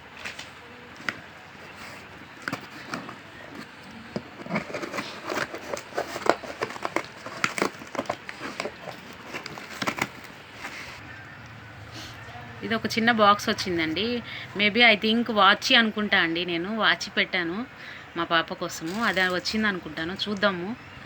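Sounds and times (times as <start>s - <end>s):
packaging crinkling and tearing: 0.1s - 11.0s.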